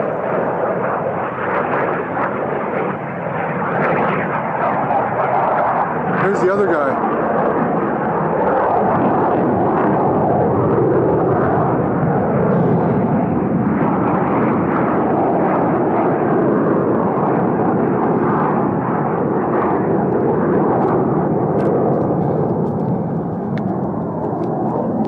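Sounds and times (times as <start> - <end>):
airplane engine roar overhead: 0.0 - 25.0.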